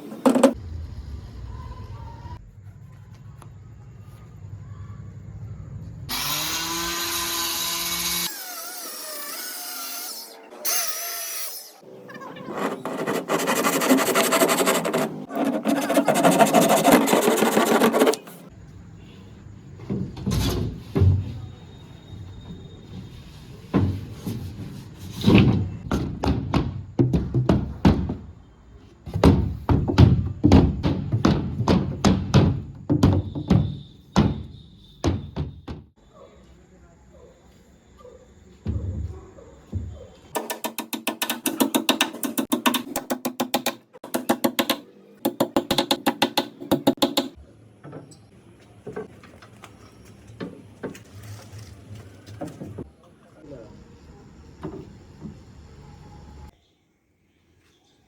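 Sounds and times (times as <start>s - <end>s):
dull knocks: 29.1s - 35.9s.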